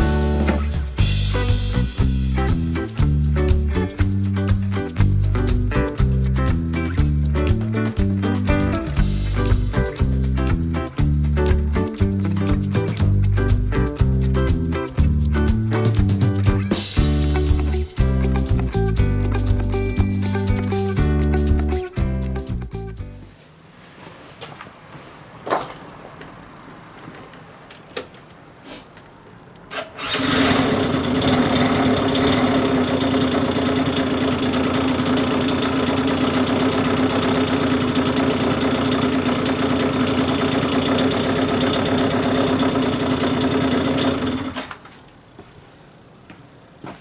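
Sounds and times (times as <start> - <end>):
scooter engine running: 0.0 - 2.6, 30.0 - 44.7.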